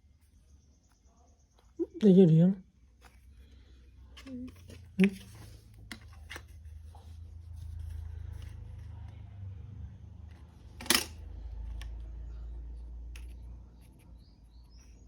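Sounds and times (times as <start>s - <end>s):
smartphone handling noise: 4.2s - 6.7s.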